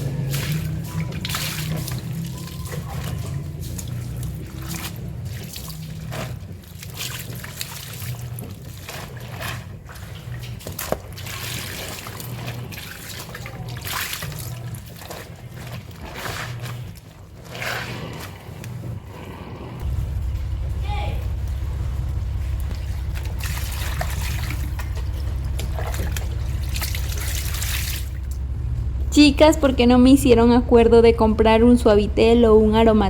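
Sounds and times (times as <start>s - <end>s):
water splashing in a basin: 0.0s - 18.9s, 22.4s - 28.4s
low pulsing hum: 0.0s - 33.0s.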